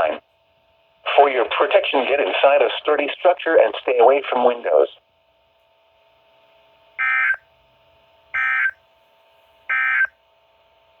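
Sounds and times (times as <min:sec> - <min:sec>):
faint steady hum: 0:00.0 - 0:11.0
warbling digital data tones: 0:07.0 - 0:07.4, 0:08.4 - 0:08.8, 0:09.7 - 0:10.1.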